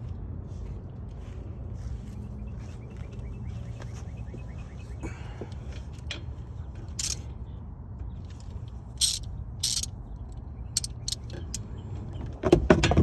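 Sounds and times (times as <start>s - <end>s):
socket ratchet clicking: 7.0s - 7.2s, 9.0s - 9.9s, 10.8s - 11.6s.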